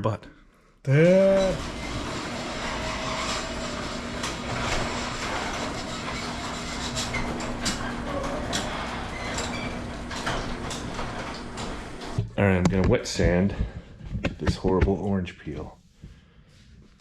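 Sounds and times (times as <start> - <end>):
mechanical hum and drone: 1.0 - 14.6.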